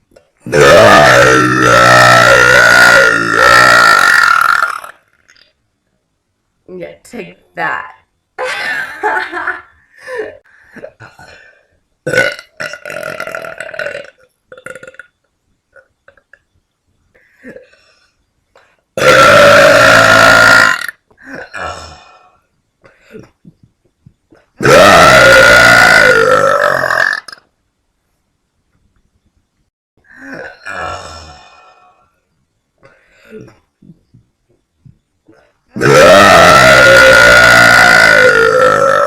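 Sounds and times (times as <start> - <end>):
woman burping: 0.5 - 4.9, 12.1 - 15.0, 19.0 - 22.0, 24.6 - 27.4, 30.1 - 31.4, 35.8 - 39.0.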